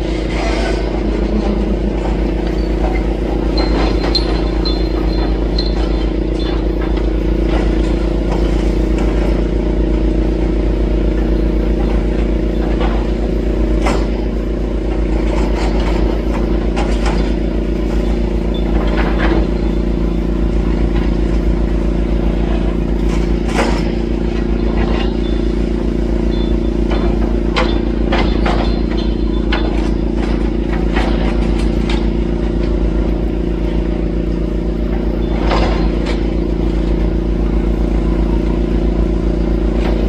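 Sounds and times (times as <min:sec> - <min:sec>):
excavator diesel engine running: 0:00.0 - 0:40.0
knocks and clatter of demolition: 0:00.2 - 0:25.3.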